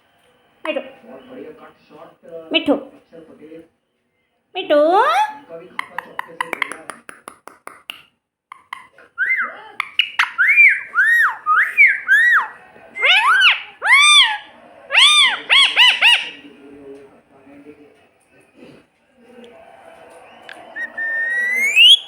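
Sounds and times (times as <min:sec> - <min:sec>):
parrot calling: 0:05.0 - 0:06.8, 0:08.5 - 0:16.5, 0:20.7 - 0:22.0.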